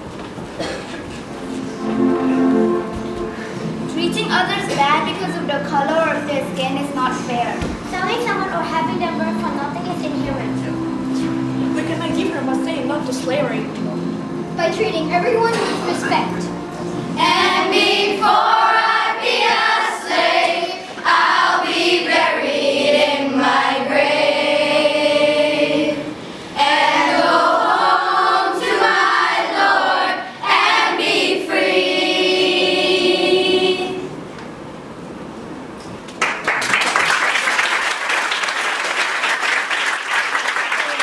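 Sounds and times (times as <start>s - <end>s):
children's choir singing: 1.4s - 5.5s, 8.4s - 34.2s
applause: 36.1s - 41.0s.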